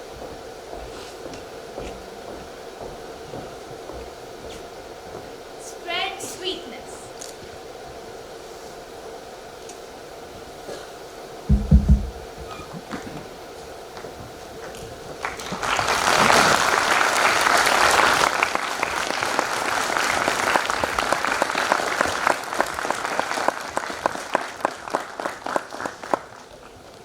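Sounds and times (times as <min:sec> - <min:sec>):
audience applauding: 0:15.2 - 0:27.0.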